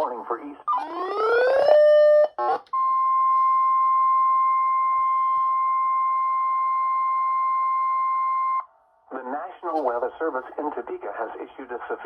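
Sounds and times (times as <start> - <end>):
faint radio hiss: 0.0 - 0.7, 9.1 - 12.0.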